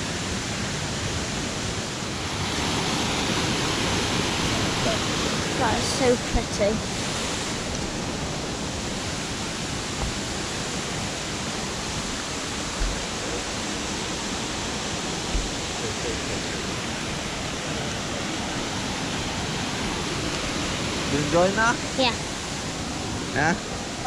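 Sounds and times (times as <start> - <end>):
waterfall rushing: 0.0 - 24.0
short low thumps: 15.3 - 15.6.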